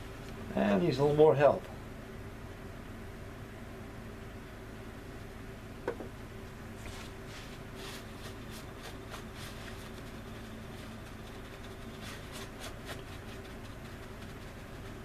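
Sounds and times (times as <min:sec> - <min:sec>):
steady low hum: 0:00.0 - 0:15.0
rapid rasping sanding strokes: 0:07.3 - 0:15.0.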